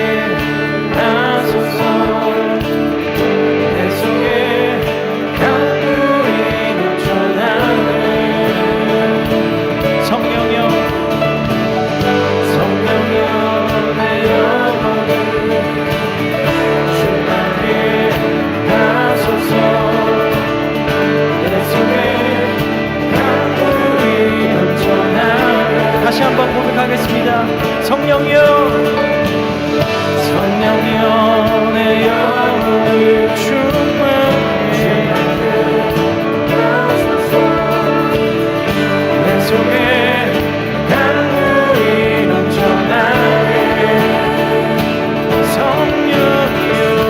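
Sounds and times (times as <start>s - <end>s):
church band worship music: 0.0s - 47.0s.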